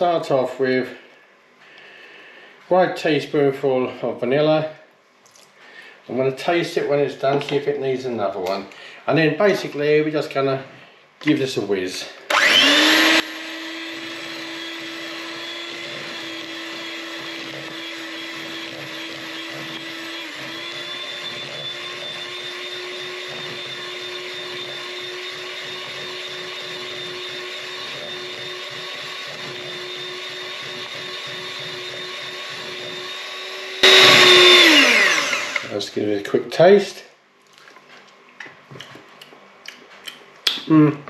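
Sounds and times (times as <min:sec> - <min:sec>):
electric mixer whining: 0:12.3 - 0:35.8.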